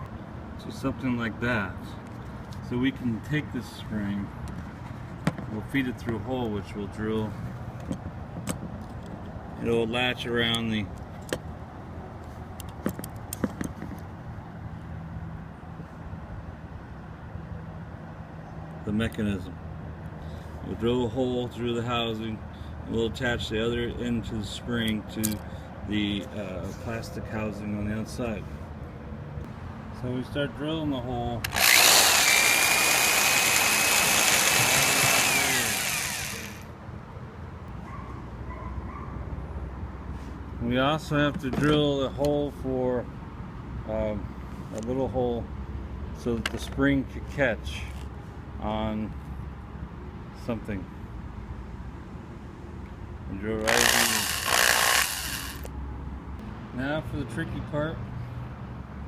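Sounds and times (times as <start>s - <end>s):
small latch parts clicking: 24.8s - 25.5s
electric drill drilling plastic: 31.5s - 36.7s, 53.6s - 55.7s.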